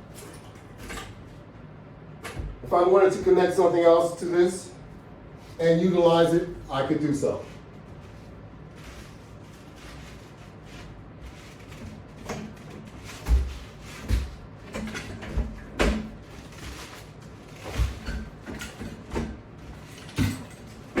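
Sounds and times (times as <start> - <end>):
exercise equipment knocks and clunks: 12.2 - 16.2.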